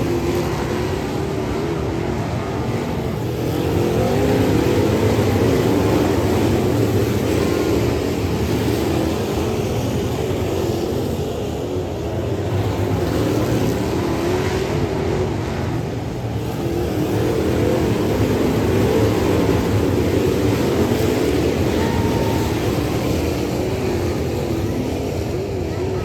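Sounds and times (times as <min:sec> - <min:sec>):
race car engine revving: 0:00.0 - 0:26.0.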